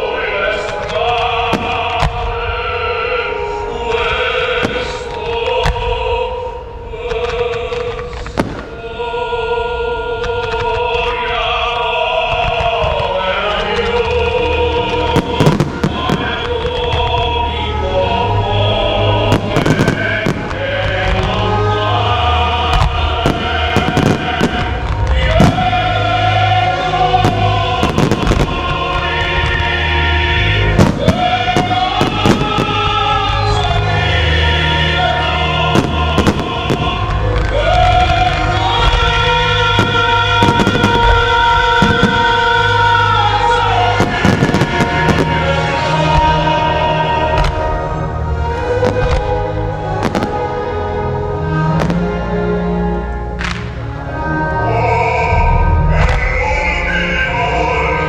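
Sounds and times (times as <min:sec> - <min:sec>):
operatic choral music: 0:00.0 - 0:58.0
fireworks bursting and crackling: 0:00.6 - 0:02.4, 0:03.9 - 0:06.1, 0:07.1 - 0:09.2, 0:10.2 - 0:17.5, 0:19.2 - 0:21.7, 0:22.6 - 0:26.1, 0:26.8 - 0:33.9, 0:35.7 - 0:52.4, 0:53.4 - 0:53.8.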